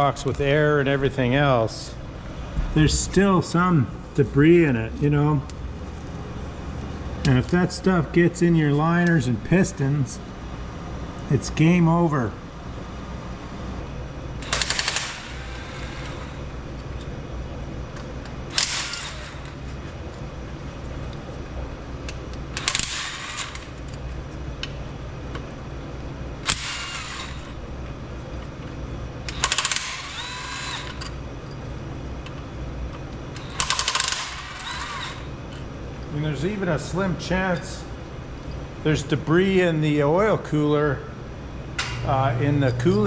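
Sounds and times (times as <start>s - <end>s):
steady low hum: 0.0s - 43.0s
impact wrench rattling bursts: 14.4s - 16.5s, 18.0s - 19.8s, 22.4s - 24.0s, 26.4s - 27.6s, 29.2s - 31.6s, 33.4s - 35.3s.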